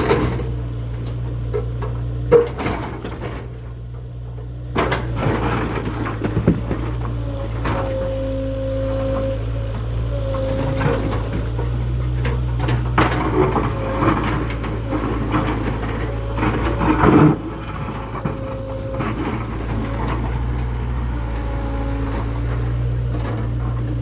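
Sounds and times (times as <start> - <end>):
excavator engine running: 0.0 - 24.0
debris clattering: 4.8 - 24.0.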